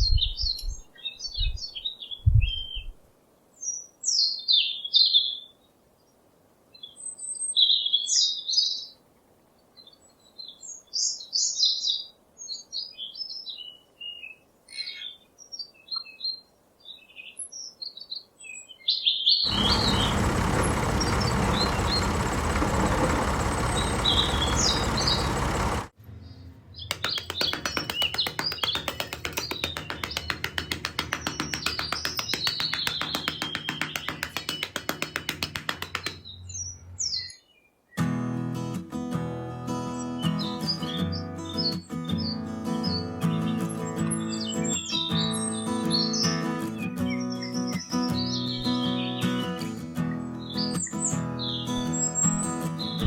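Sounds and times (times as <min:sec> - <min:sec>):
small birds chirping: 0:09.8 - 0:37.8
loud steady rushing noise: 0:19.5 - 0:25.9.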